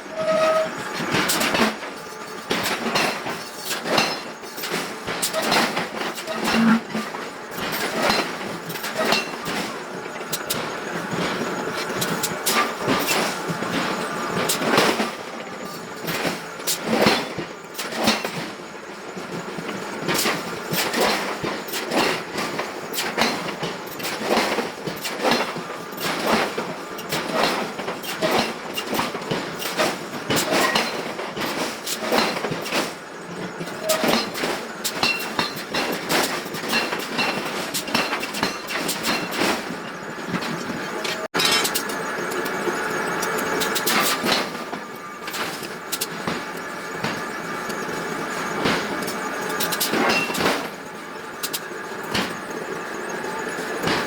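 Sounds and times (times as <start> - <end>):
factory background noise: 0.0 - 54.0
workshop din: 0.1 - 18.4, 24.1 - 54.0
metal-on-metal clanks: 0.2 - 9.7, 40.4 - 42.0.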